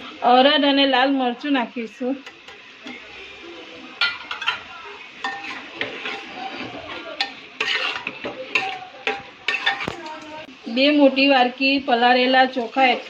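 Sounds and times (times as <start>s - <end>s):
faint sizzle: 0.0s - 13.0s
metal spoon scraping pot: 4.0s - 10.0s
spoon clinking against pot: 7.2s - 10.0s.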